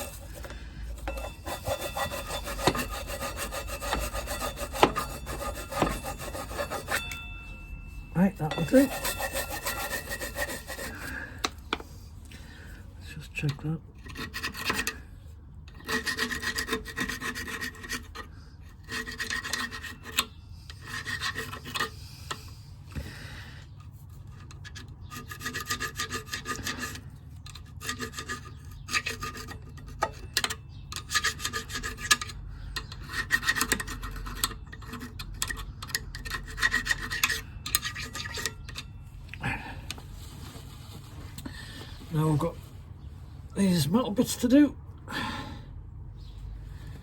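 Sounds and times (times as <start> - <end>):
nylon brush scrubbing metal: 0.0 - 7.3, 8.2 - 11.2.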